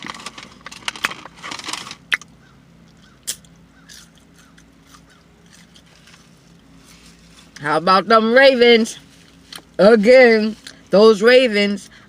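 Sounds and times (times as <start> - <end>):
low steady hum: 0.0 - 12.0
mouth smacks while eating: 3.2 - 5.1.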